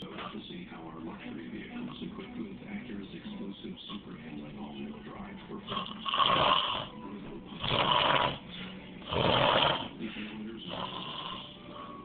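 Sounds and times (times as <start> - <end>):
man snoring: 5.7 - 6.9, 7.6 - 10.0, 10.6 - 11.8.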